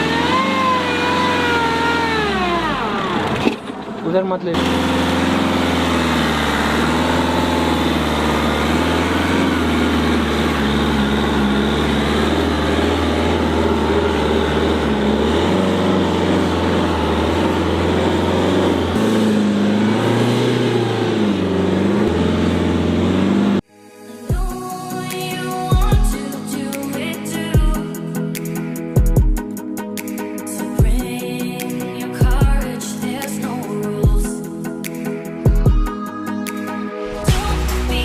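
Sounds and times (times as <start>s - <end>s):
diesel engine revving under load: 0.0s - 23.7s.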